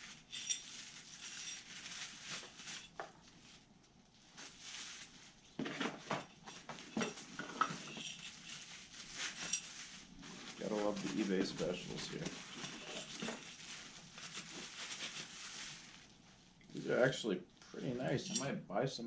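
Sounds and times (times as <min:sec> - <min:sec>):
packaging rustling: 0:00.2 - 0:03.2, 0:04.4 - 0:16.2.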